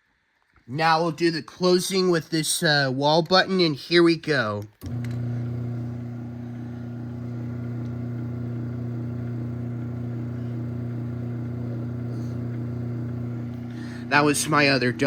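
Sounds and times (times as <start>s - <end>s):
garage door opener motor humming: 4.8s - 15.0s.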